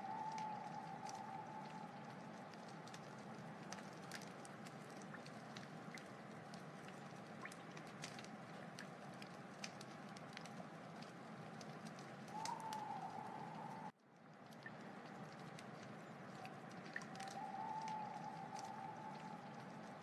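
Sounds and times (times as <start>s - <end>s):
faint steady tone: 0.0s - 7.2s, 12.3s - 20.0s
wood fire crackling and popping: 0.0s - 20.0s.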